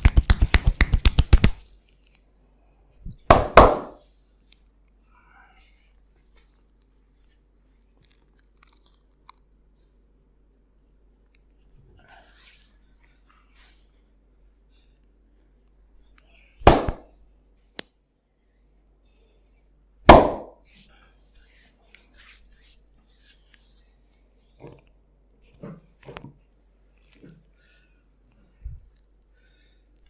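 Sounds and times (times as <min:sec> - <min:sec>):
hands slapping skin: 0:00.0 - 0:01.6, 0:03.3 - 0:04.0, 0:16.6 - 0:17.1, 0:20.1 - 0:20.6
hands rubbing skin: 0:00.0 - 0:02.3.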